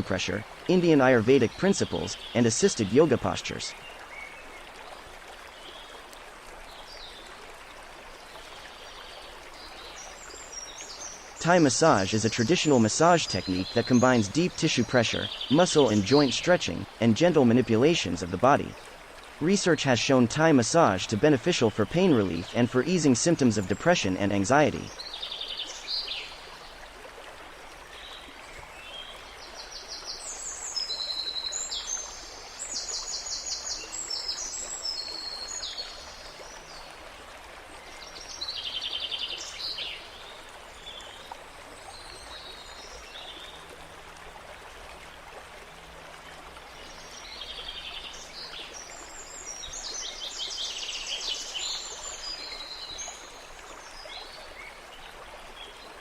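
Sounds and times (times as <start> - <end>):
songbirds singing: 0.0 - 7.3, 8.1 - 26.9, 27.8 - 37.0, 37.7 - 43.8, 46.5 - 56.0
running water rush: 0.0 - 56.0.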